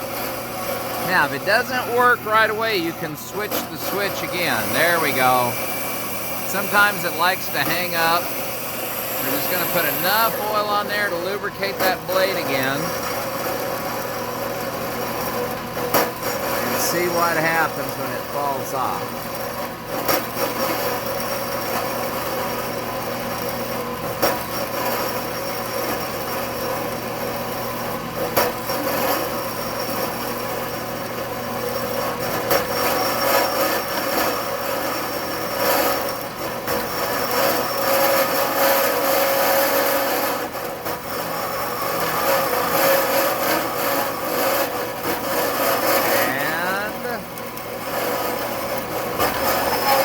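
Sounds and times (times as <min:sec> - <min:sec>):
motor hum: 0:00.0 - 0:14.5
bandsaw blade rasping through metal: 0:03.3 - 0:13.6, 0:31.7 - 0:50.0.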